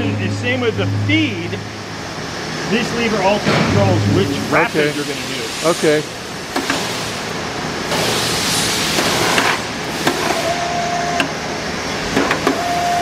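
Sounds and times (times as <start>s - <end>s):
steady rushing noise: 0.0s - 10.2s
lathe motor whining: 10.0s - 13.0s.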